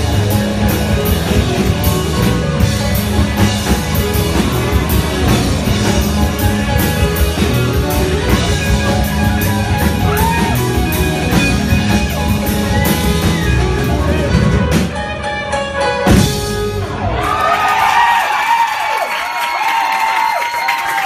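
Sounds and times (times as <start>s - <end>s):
live rock band playing: 0.0s - 18.6s
audience cheering and whooping: 9.6s - 14.4s, 16.8s - 21.0s.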